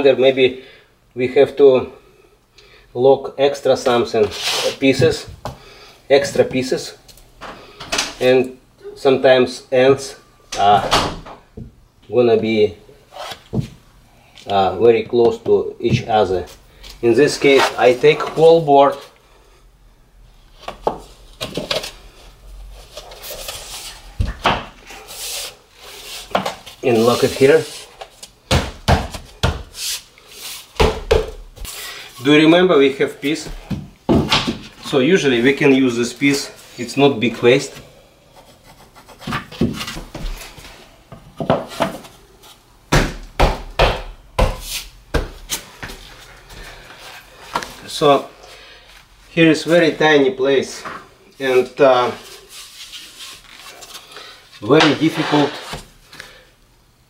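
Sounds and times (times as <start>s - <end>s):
floor board scraping: 4.2s - 4.8s, 22.8s - 28.0s, 54.8s - 55.9s
laminate boards knocking: 42.9s - 45.4s.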